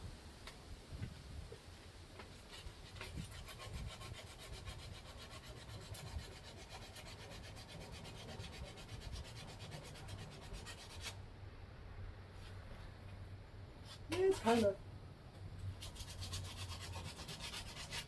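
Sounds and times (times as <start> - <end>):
sandpaper rubbing: 2.5 - 11.2, 15.8 - 18.0.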